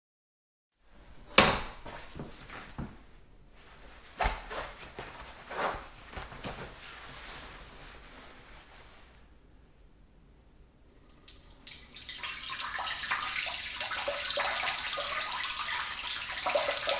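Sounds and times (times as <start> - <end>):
clunks and knocks in bathroom: 1.3 - 3.0.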